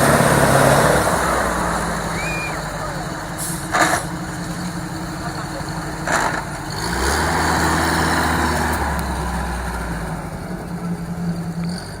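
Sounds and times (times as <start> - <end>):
truck engine running: 0.0 - 12.0.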